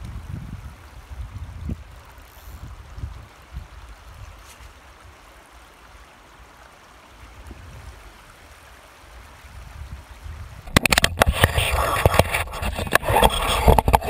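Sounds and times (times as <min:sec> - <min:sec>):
river water rushing: 0:03.3 - 0:14.0.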